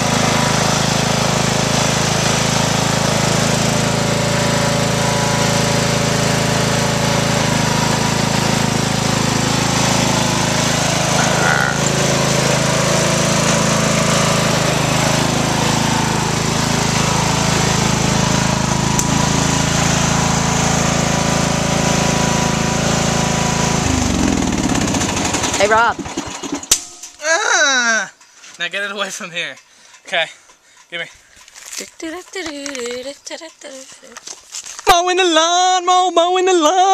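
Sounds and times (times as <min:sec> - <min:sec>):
riding lawnmower engine running: 0:00.0 - 0:27.0.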